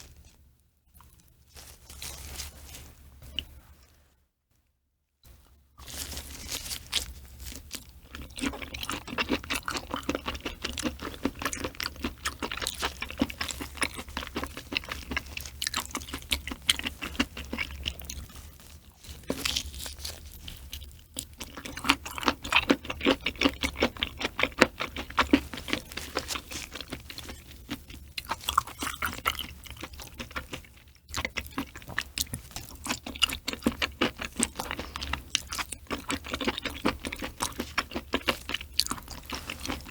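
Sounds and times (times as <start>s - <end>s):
chewing and crunching: 0.0s - 3.9s, 5.3s - 39.9s.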